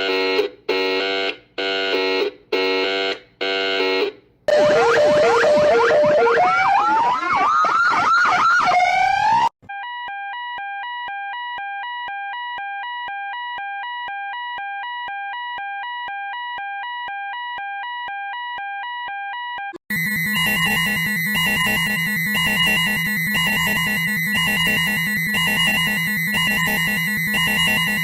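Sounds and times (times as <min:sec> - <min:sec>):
siren-like alarm sweeps and chirps: 0:04.5 - 0:28.0
two-tone alternating beep: 0:19.9 - 0:28.0.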